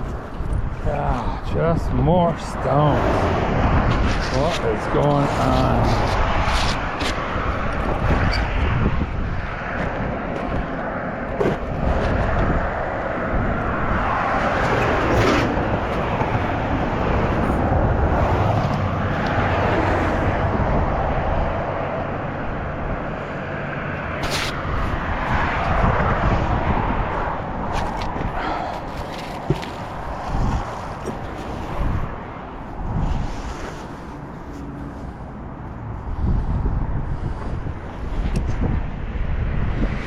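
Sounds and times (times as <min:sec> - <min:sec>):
road traffic passing: 0:00.0 - 0:40.0.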